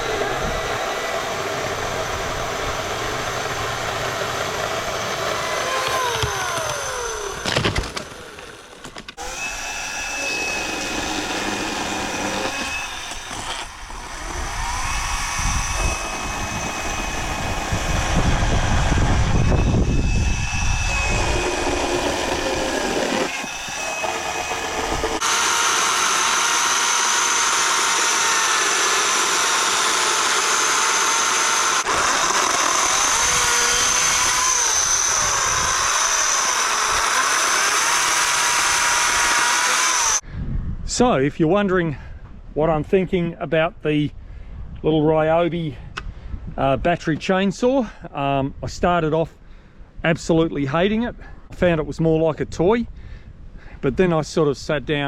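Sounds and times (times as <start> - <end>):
electric chainsaw running: 0.0 - 40.2.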